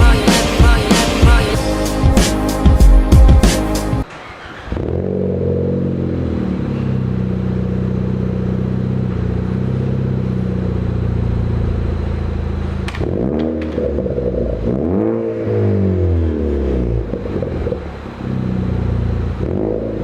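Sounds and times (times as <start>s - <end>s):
car exhaust revving: 3.6s - 20.0s.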